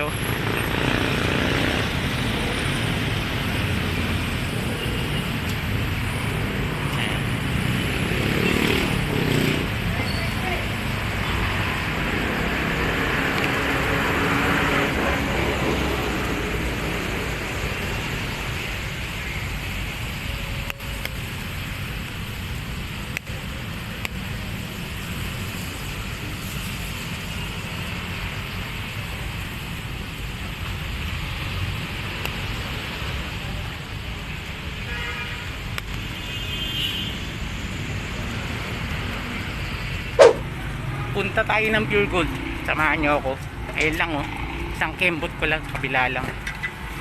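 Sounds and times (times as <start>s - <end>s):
cars passing on wet road: 0.0s - 47.0s.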